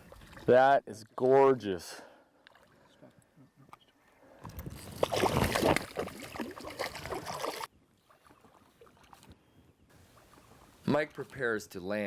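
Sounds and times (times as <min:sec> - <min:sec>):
water splashing and sloshing: 0:00.0 - 0:00.6, 0:02.3 - 0:03.2, 0:04.3 - 0:09.4.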